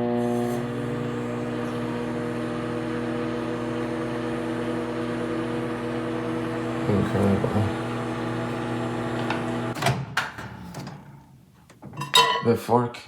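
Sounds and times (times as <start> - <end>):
microwave oven hum and fan drone: 0.0 - 9.8.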